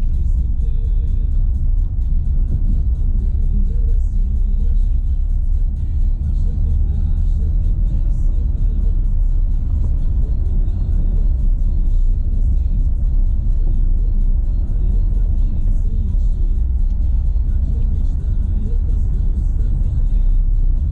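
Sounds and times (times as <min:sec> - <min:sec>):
car tyres rumbling on dirt: 0:00.0 - 0:20.9
music playing: 0:00.0 - 0:20.9.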